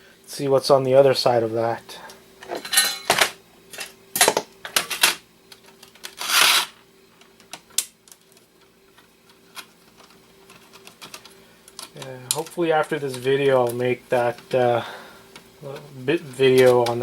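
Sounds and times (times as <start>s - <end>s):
clicks and clatter of handled parts: 7.2s - 14.4s.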